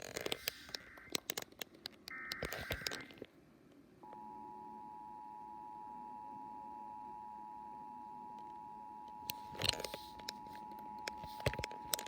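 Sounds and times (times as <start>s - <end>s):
sharp crackling clicks: 0.0s - 3.4s.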